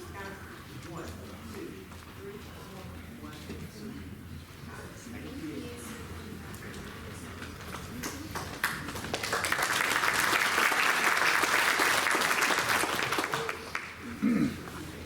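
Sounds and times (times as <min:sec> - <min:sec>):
audience applauding: 0:08.3 - 0:14.0.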